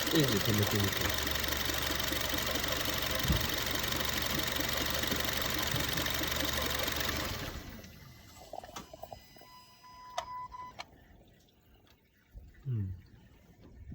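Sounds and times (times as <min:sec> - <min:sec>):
engine ticking clatter: 0:00.0 - 0:08.0.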